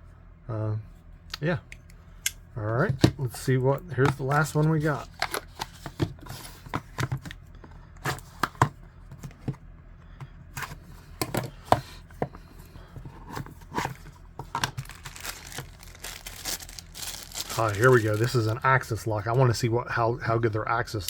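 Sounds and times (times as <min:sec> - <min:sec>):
packaging tearing and rustling: 0:04.2 - 0:06.5, 0:13.4 - 0:18.9.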